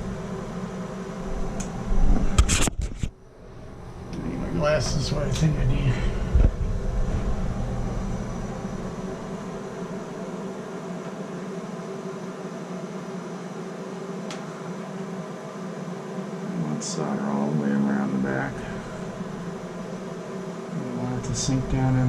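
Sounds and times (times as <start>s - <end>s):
torch flame hissing: 3.4s - 10.8s, 15.9s - 22.0s.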